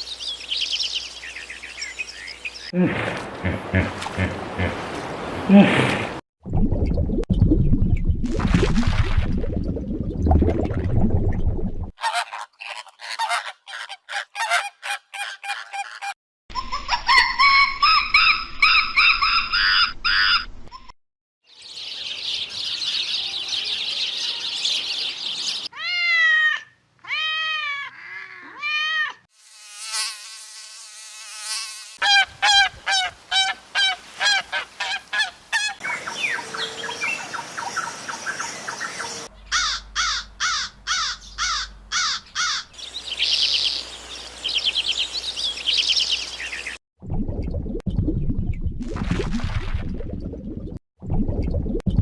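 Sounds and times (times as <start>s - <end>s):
bird calls and songs: 0.0s - 2.8s, 21.5s - 25.7s, 35.7s - 39.9s, 41.2s - 46.8s.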